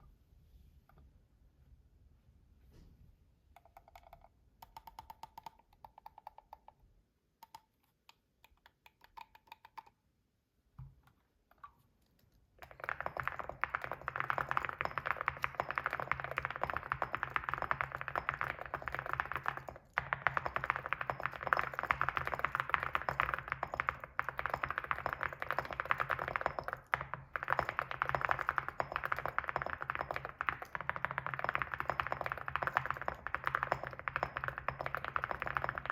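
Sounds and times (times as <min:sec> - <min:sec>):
typing on mechanical keyboard: 0:03.6 - 0:06.8, 0:08.4 - 0:09.9, 0:12.6 - 0:35.9.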